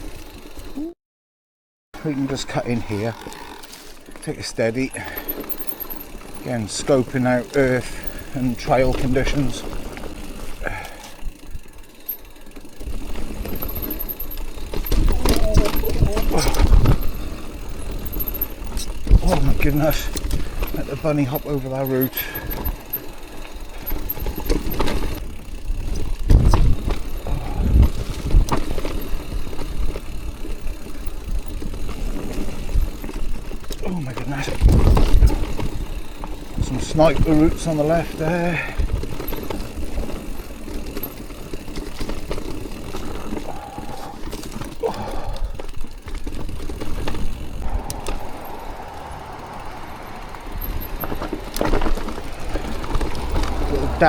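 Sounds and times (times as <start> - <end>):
mountain bike rattling over roots: 0.0 - 0.8, 2.0 - 54.0
heavy bike thuds: 13.0 - 21.4, 22.1 - 30.2, 34.4 - 37.7, 41.0 - 54.0
steady whine: 47.6 - 51.8.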